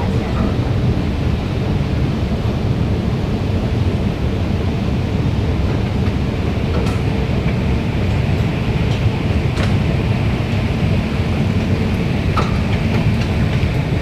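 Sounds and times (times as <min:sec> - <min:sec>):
train rumbling along track: 0:00.0 - 0:14.0.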